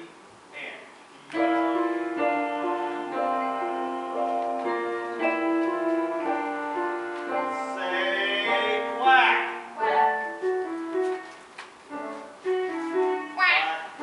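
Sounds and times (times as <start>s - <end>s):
keyboard playing held chords: 1.3s - 14.0s
wavering higher melody line: 1.4s - 11.3s.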